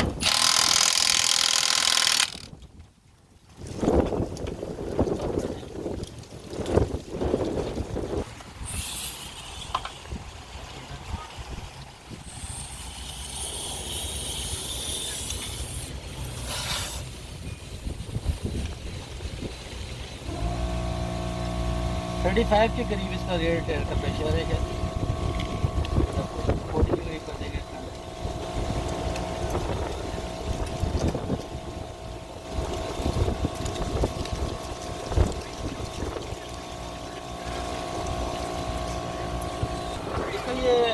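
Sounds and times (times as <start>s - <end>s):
air compressor running: 0.0s - 2.5s, 20.2s - 40.9s
compressed air hissing into tyre: 8.6s - 10.2s, 12.2s - 17.2s.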